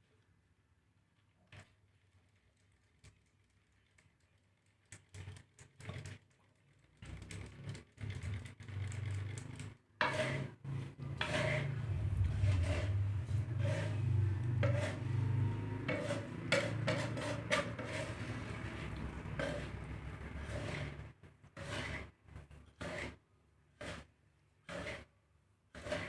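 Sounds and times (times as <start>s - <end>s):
seeds scraping and rattling in a pan: 1.6s - 25.1s, 25.7s - 26.0s
low hum: 11.6s - 15.9s.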